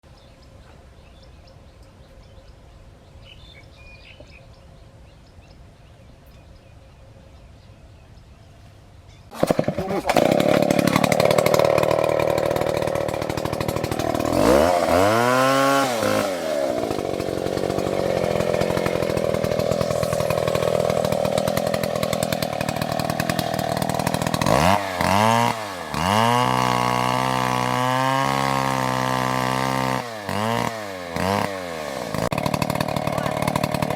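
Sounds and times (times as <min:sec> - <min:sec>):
chainsaw revving: 0:09.3 - 0:33.9.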